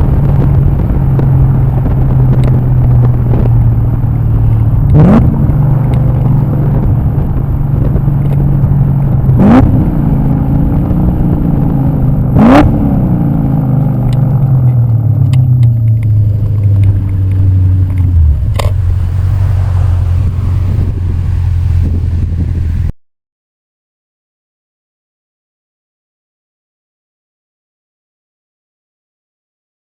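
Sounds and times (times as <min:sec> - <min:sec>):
car engine revving: 0:00.1 - 0:22.9.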